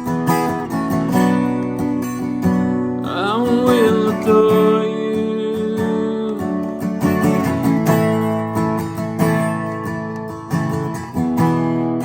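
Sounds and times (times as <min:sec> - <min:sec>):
acoustic guitar strumming chords: 0:00.0 - 0:12.0
person singing: 0:03.0 - 0:07.6.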